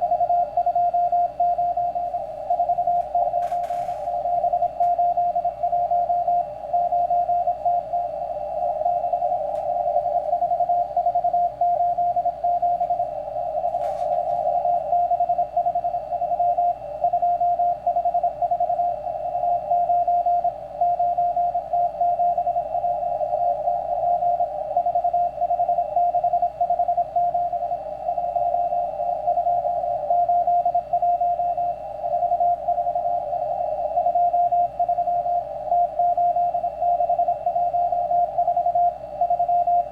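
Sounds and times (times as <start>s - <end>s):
morse code tone: 0.0s - 39.9s
static hiss: 2.1s - 4.9s.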